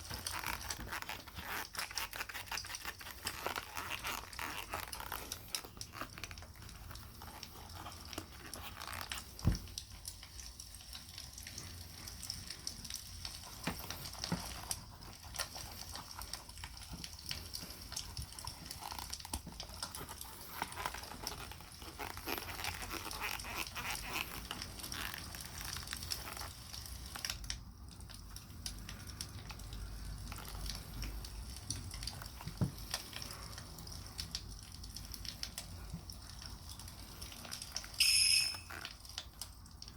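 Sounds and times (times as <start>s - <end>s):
wax rubbing on leather: 0.0s - 9.8s, 11.5s - 27.1s.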